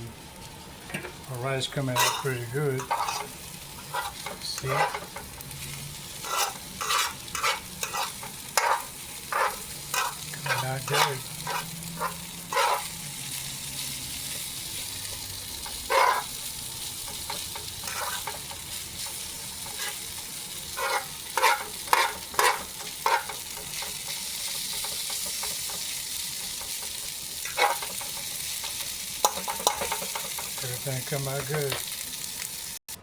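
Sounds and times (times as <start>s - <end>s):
food sizzling in a skillet: 0.0s - 32.9s
stirring strokes in a skillet: 0.1s - 32.8s.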